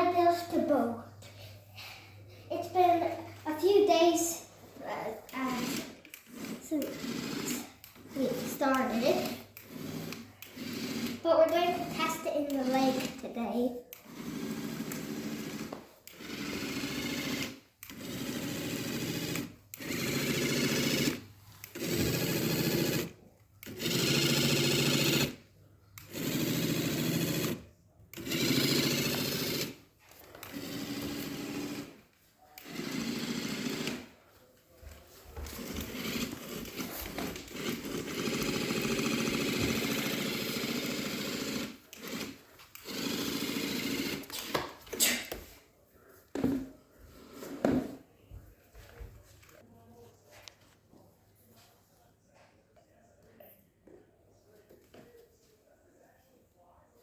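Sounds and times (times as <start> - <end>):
small electric motor running: 5.3 - 13.1, 13.9 - 25.4, 26.0 - 34.1, 35.4 - 44.6.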